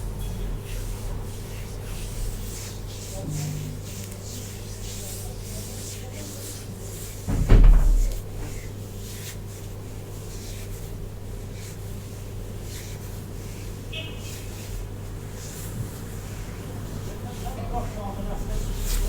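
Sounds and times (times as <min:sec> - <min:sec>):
steady low hum: 0:00.0 - 0:06.0
brush swishing through hair: 0:00.3 - 0:07.3, 0:08.0 - 0:19.0
loud low thump: 0:07.3 - 0:08.1.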